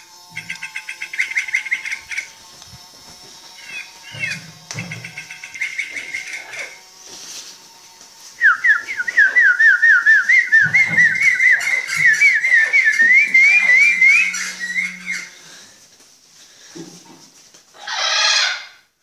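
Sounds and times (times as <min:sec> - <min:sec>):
toy rising whistle chirps: 0:08.4 - 0:15.4.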